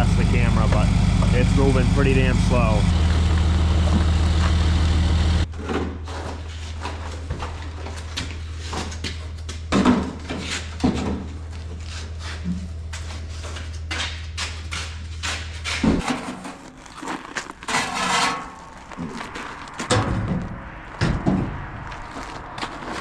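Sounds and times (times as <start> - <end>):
diesel truck engine running: 0.0 - 5.5
low hum: 0.0 - 5.5.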